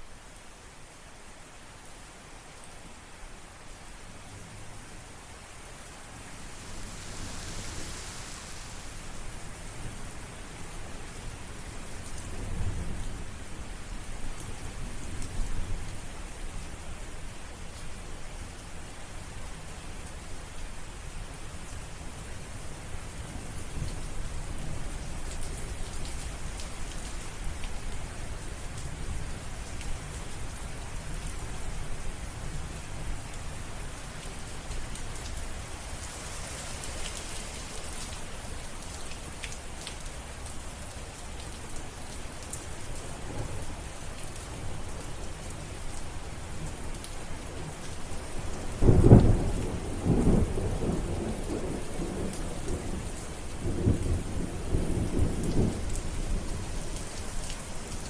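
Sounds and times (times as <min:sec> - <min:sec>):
steady rain: 0:00.0 - 0:58.0
loud thunderclap: 0:06.2 - 0:09.6
low rolling thunder: 0:06.2 - 0:09.8, 0:48.8 - 0:56.6.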